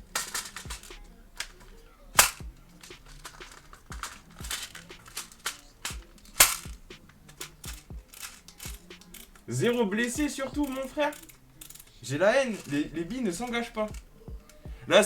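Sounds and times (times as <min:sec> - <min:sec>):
airsoft gun firing clacks: 0:00.0 - 0:14.6
clicks of gun handling: 0:00.1 - 0:09.5.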